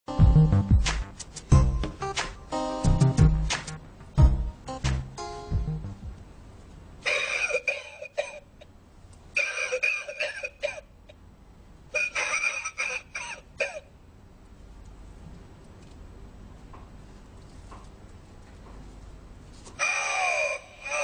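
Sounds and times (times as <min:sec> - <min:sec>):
recorded coughing: 0:07.0 - 0:08.6, 0:09.4 - 0:10.9, 0:11.9 - 0:13.9, 0:19.8 - 0:21.0.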